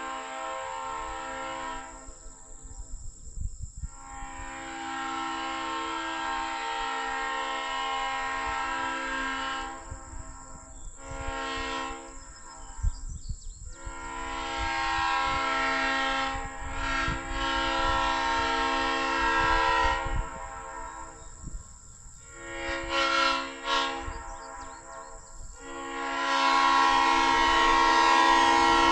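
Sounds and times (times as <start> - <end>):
air horn blasts: 0.0 - 3.0, 3.8 - 12.9, 13.7 - 28.9.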